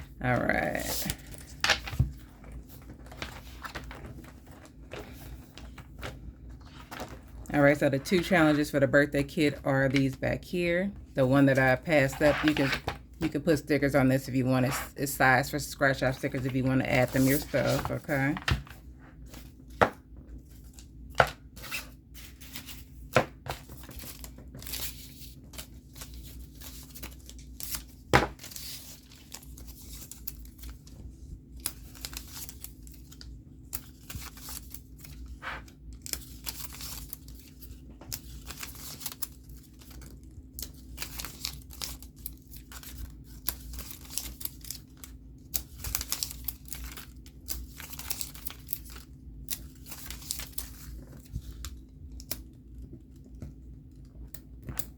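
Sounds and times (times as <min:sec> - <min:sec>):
paper tearing and crinkling: 0:31.6 - 0:52.4.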